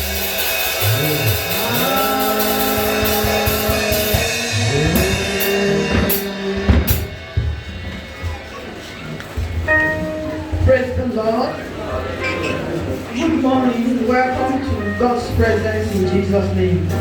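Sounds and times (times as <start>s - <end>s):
sliding bass notes: 0.0s - 8.3s, 9.6s - 11.0s
drum kit playing: 0.0s - 11.4s
band music: 0.0s - 17.0s.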